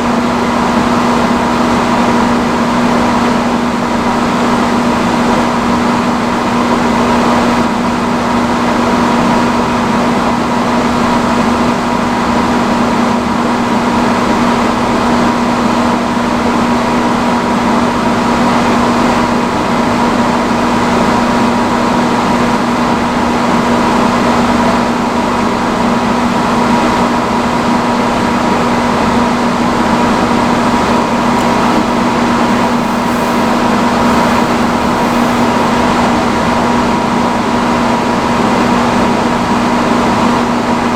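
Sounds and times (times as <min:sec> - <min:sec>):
motor hum: 0:30.2 - 0:36.5
hair dryer blowing air: 0:30.5 - 0:36.6.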